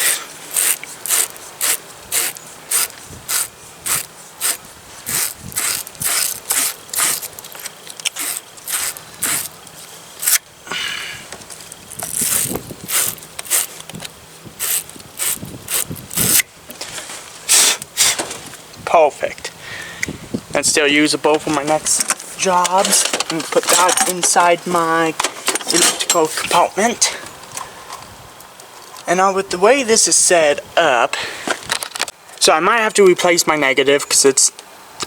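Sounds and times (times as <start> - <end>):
hand tool clicking: 0.0 - 10.4, 11.6 - 16.4
hiss: 17.5 - 18.3.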